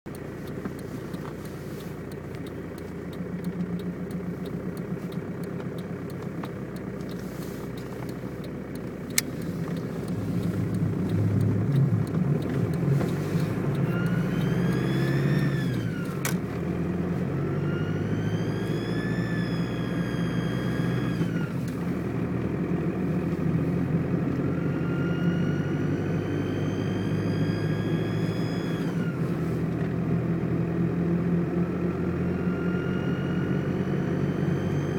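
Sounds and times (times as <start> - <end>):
diesel engine running: 0.0 - 34.9
sharp clicks: 0.1 - 16.6
whistle rising and falling: 13.8 - 16.0, 17.6 - 21.3, 24.8 - 28.9, 34.2 - 34.9.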